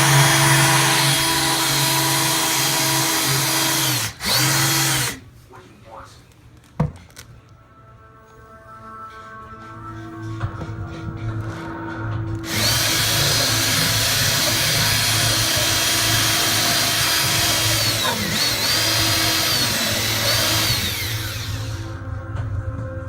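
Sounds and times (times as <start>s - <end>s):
power drill whining: 0.0s - 5.2s, 12.4s - 22.0s.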